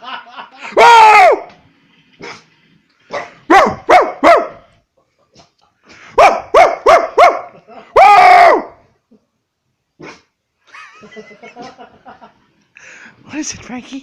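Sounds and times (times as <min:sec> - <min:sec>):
dog barking: 0:03.1 - 0:04.7, 0:06.1 - 0:07.6.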